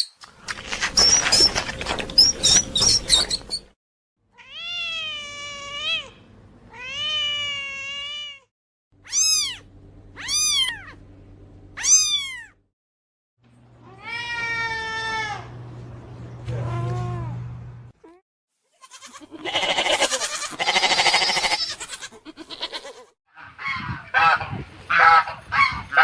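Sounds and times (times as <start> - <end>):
cat meowing: 4.4 - 9.6, 10.2 - 11.0, 11.8 - 12.6, 13.8 - 15.5.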